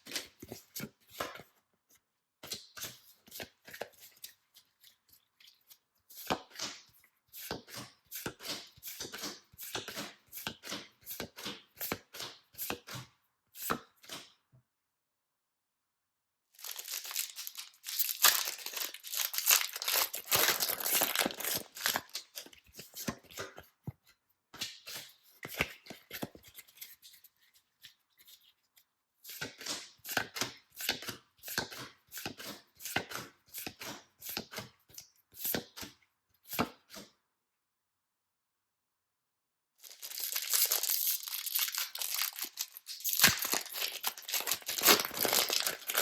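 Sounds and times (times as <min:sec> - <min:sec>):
packaging tearing and crinkling: 0:16.6 - 0:22.6, 0:39.8 - 0:46.0.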